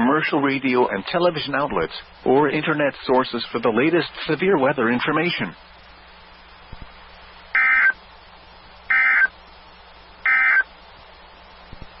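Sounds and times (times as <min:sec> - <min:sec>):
receiver hiss and hum: 0:00.0 - 0:12.0
buzzy warbling data tones: 0:07.6 - 0:08.0, 0:08.9 - 0:09.3, 0:10.2 - 0:10.6.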